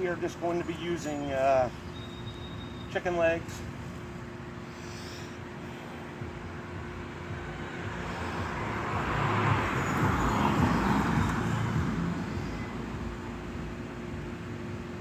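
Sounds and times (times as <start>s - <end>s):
vehicle passing by: 4.7s - 14.2s.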